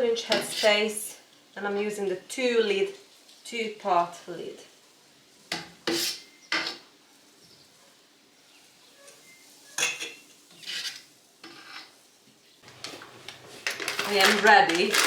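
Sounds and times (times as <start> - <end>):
metal utensils clinking on jars: 9.8 - 10.2.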